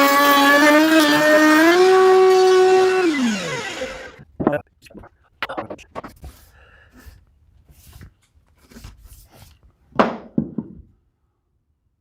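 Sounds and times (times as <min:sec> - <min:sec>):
objects knocking on workbench: 0:10.0 - 0:10.9.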